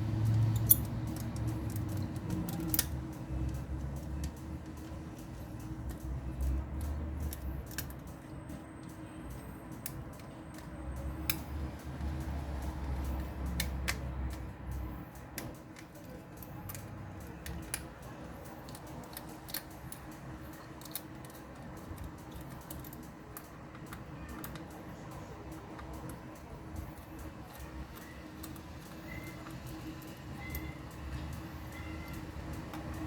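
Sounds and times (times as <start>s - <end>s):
clicks and taps of tools: 0.2s - 33.0s.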